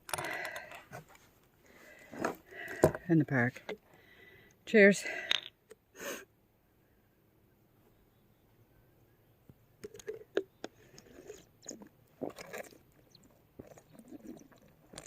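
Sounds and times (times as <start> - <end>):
person chewing crunchy food: 9.8 - 15.0.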